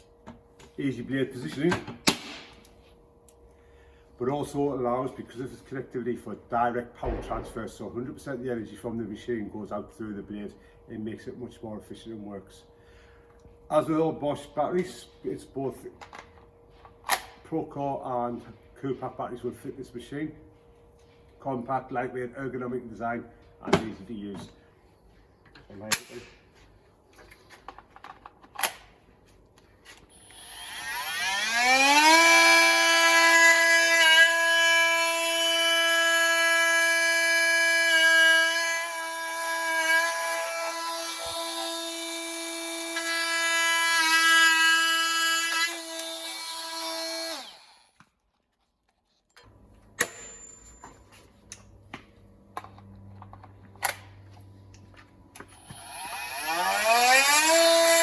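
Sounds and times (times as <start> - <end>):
oscillating multi-tool whining: 30.0 - 48.0, 55.3 - 58.0.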